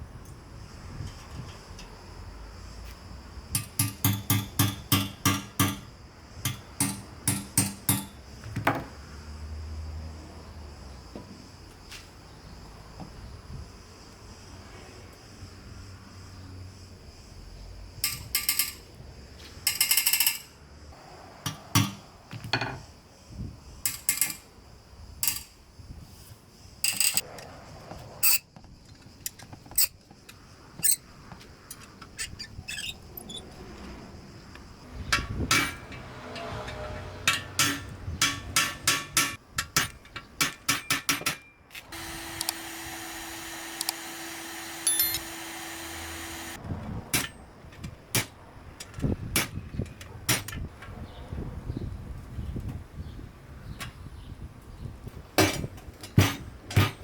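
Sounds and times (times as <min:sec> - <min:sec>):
hand tools clicking on metal: 0:03.5 - 0:08.2, 0:18.0 - 0:18.8, 0:19.7 - 0:20.5, 0:23.8 - 0:24.4, 0:25.2 - 0:25.5, 0:28.2 - 0:33.4, 0:35.1 - 0:42.7, 0:43.3 - 0:46.6.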